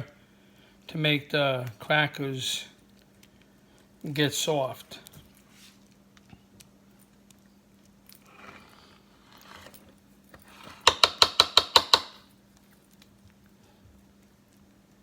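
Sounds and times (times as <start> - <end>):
soft scraping: 5.3 - 5.9.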